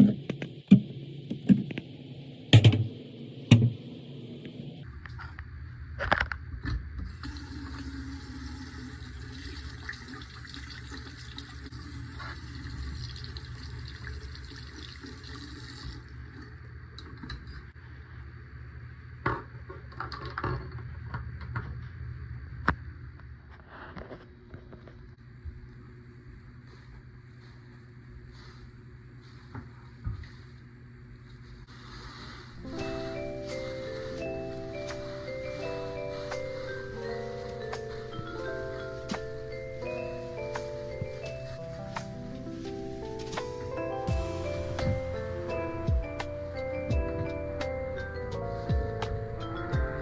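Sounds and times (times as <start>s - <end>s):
door knobs clinking: 2.6s - 2.9s
tap water running into sink: 7.2s - 16.0s.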